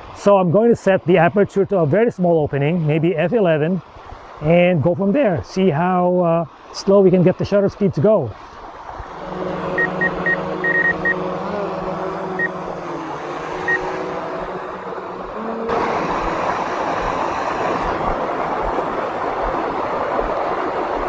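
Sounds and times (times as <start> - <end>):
propeller wash rushing: 8.3 - 21.0
drone motors humming: 8.8 - 19.2
short high beeps: 9.8 - 11.2.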